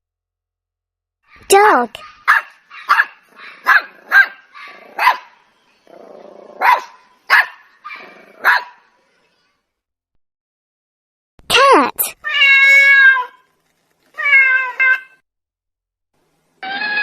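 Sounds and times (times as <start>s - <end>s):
dog barking: 1.3s - 5.4s, 6.6s - 8.9s
dog growling low: 5.9s - 6.7s.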